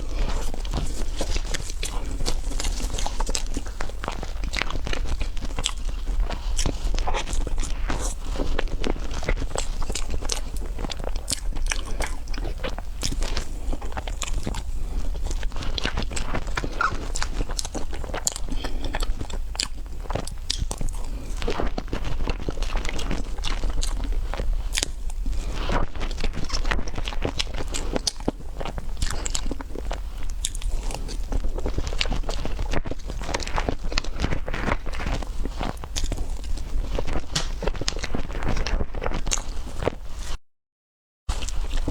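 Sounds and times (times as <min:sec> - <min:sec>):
chocolate crackling: 0:00.0 - 0:21.0, 0:31.3 - 0:38.4
person biting and chewing: 0:00.0 - 0:40.4, 0:41.3 - 0:41.9.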